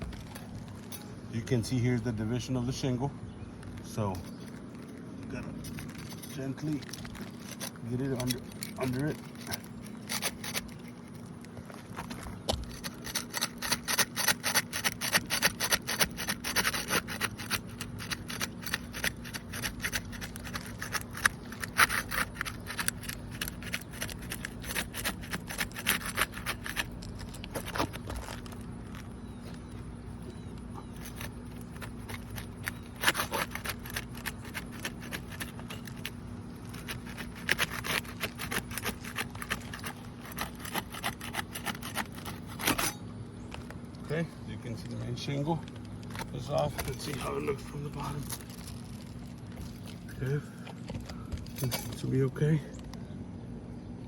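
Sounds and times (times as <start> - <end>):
tool scraping under roof shingles: 3.8 - 43.0.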